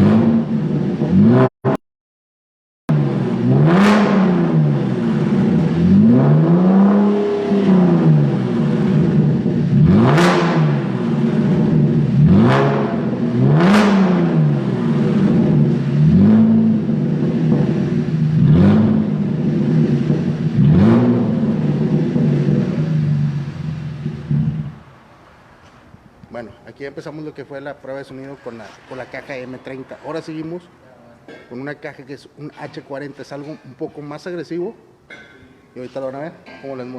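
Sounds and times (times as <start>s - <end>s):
car engine revving: 0.0s - 1.8s, 2.9s - 25.4s
car engine idling: 3.0s - 25.8s.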